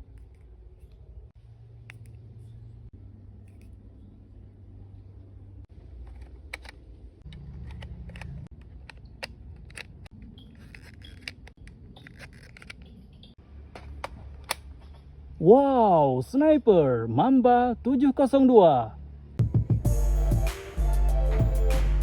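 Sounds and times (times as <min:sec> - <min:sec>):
plastic clicks and snaps: 0:06.0 - 0:13.1.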